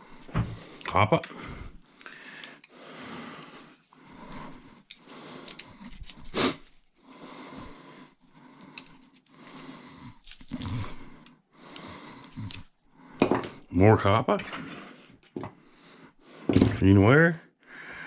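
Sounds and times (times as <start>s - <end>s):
scraping and tearing copper wire: 0.6s - 13.7s.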